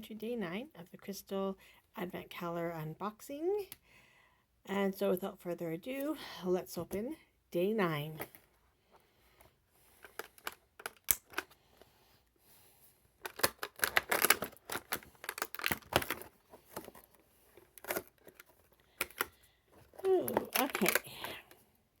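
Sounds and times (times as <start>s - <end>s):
cardboard tearing and crinkling: 13.2s - 19.3s, 19.9s - 21.2s.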